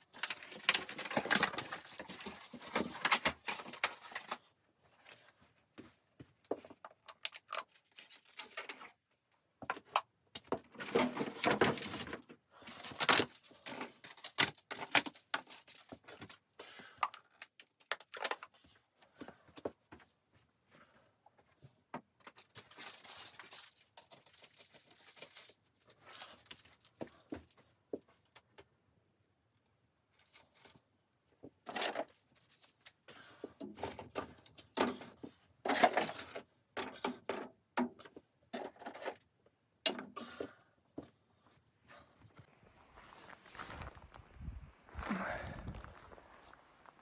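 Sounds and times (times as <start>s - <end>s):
rustling and scraping: 39.9s - 47.0s.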